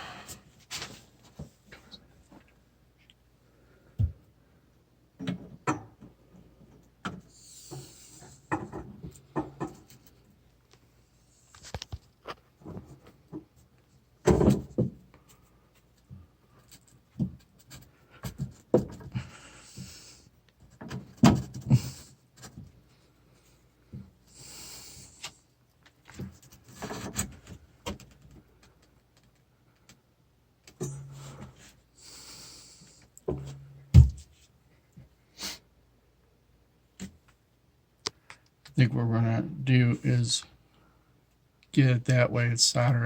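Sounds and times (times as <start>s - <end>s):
knocks and clinks on plumbing: 5.2s - 6.2s, 8.5s - 9.9s.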